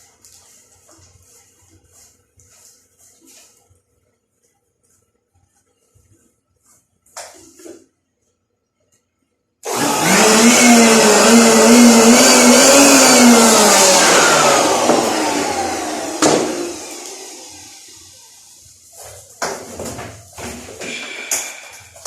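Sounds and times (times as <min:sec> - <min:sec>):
electric motor whining: 0:09.7 - 0:18.4.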